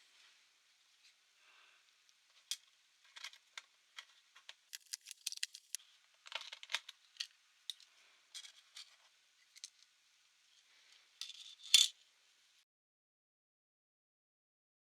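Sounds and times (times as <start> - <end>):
small plastic and metal parts clicking: 2.5 - 9.9.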